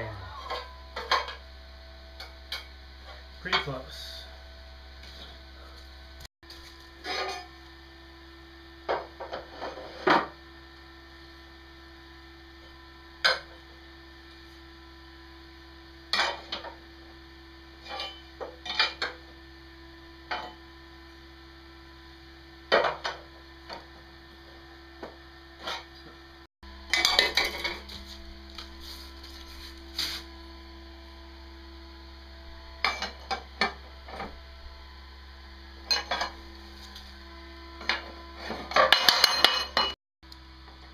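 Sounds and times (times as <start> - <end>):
electrical hum: 0.0 - 40.9.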